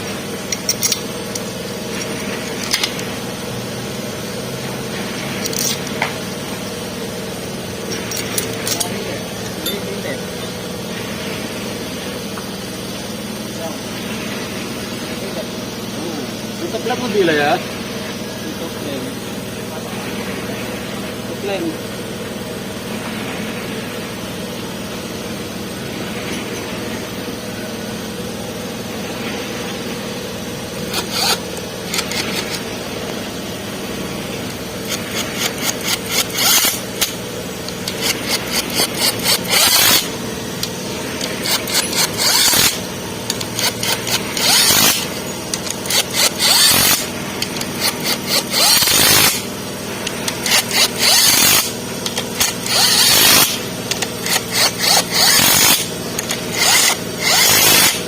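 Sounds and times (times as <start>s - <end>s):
background hum: 0.0s - 58.0s
hand scraping strokes: 30.6s - 58.0s.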